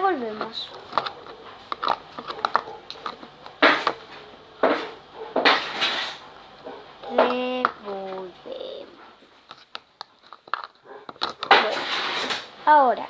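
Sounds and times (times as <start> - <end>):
utensil scraping container: 0.2 - 6.2, 9.5 - 12.5.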